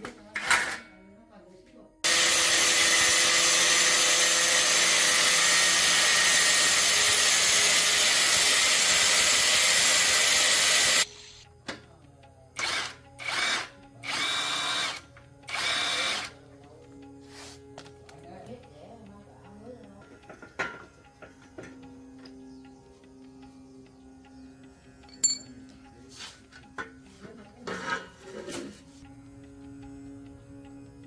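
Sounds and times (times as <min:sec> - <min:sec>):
power tool running: 0:02.0 - 0:11.4, 0:12.6 - 0:16.4.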